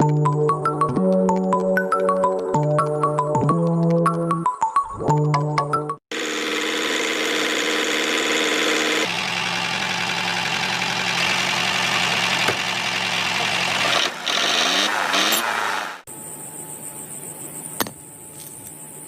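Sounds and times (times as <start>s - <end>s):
motor running: 6.1s - 16.1s.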